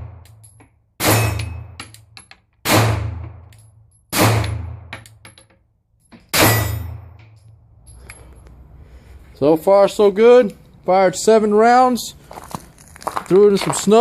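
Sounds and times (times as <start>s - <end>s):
pistol shots with echo: 2.6s - 3.4s, 4.1s - 4.9s.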